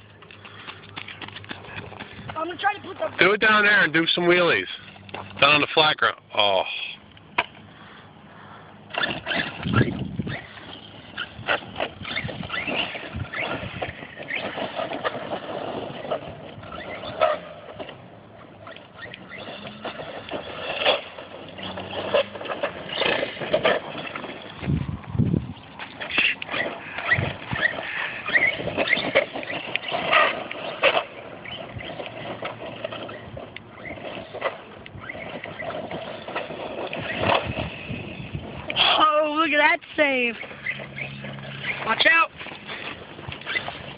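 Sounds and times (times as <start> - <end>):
tires and chassis clattering: 0.0 - 43.9
tyres crackling on ground: 0.0 - 43.9
electric motor whining: 8.9 - 43.9.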